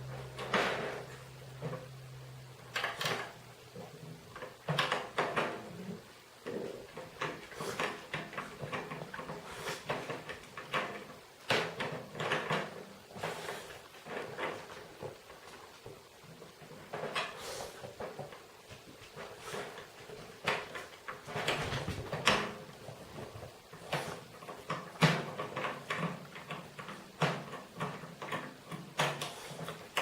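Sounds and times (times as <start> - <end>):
low steady hum: 0.0 - 9.6
clicks and rattles on snare drum: 2.7 - 30.0.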